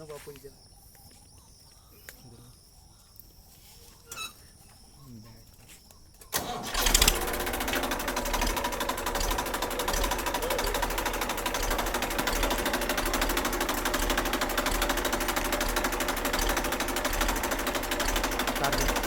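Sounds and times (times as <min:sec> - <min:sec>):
diesel tractor engine clattering: 0:06.3 - 0:19.0.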